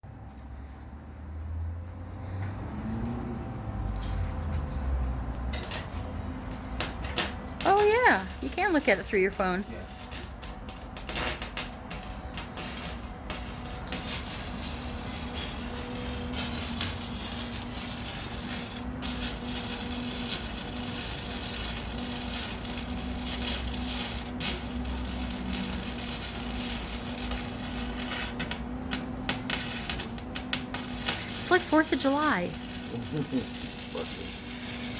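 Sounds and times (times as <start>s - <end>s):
electrical hum: 3.0s - 34.9s
welding arc crackling: 5.6s - 34.9s.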